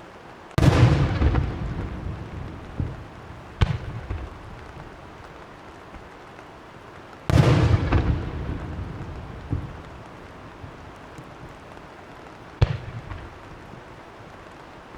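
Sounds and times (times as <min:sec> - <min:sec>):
rumbling crackle: 0:00.5 - 0:14.9
fireworks booming: 0:00.6 - 0:05.4, 0:07.3 - 0:11.9, 0:12.6 - 0:13.8.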